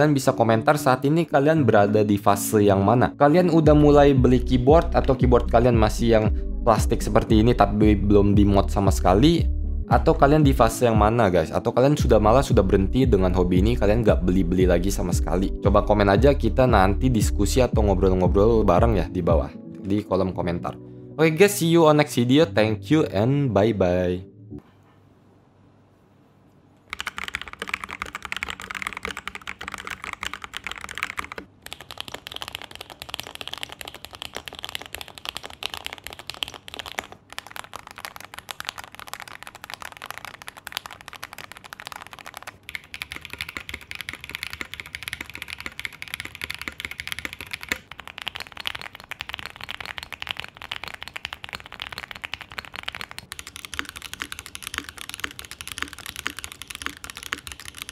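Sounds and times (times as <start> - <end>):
mechanical keyboard typing: 26.9 - 57.9.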